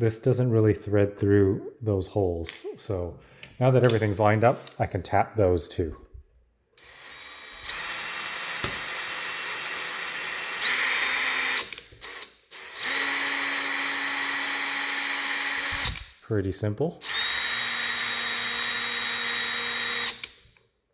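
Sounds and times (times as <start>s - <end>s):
power drill turning a tap: 6.8s - 16.1s, 17.0s - 20.4s.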